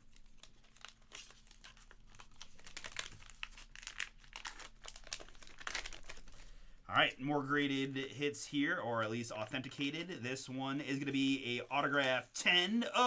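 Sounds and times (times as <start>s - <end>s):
plastic packaging crinkling and tearing: 0.0s - 6.8s.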